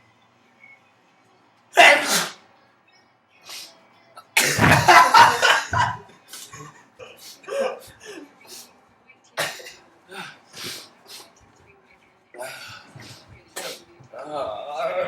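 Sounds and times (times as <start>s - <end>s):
choppy burst of voice: 1.8s - 2.4s, 3.4s - 8.8s, 9.4s - 15.0s
person sneezing: 1.8s - 2.4s, 4.4s - 8.7s, 9.4s - 11.3s, 12.4s - 13.8s.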